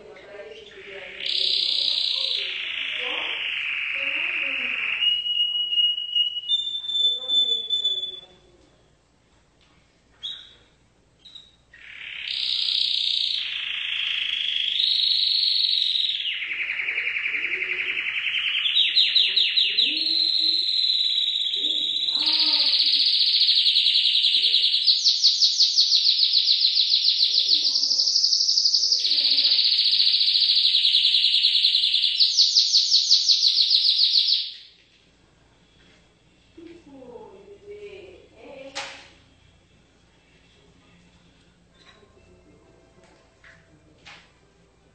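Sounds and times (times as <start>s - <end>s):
canary singing: 0.0s - 8.9s, 10.2s - 34.8s.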